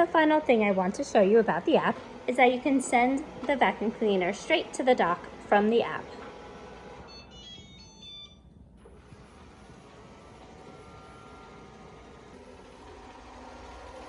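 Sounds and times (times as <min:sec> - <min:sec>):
faint running hum: 0:00.0 - 0:14.0
electronic chime beeps: 0:07.1 - 0:08.4.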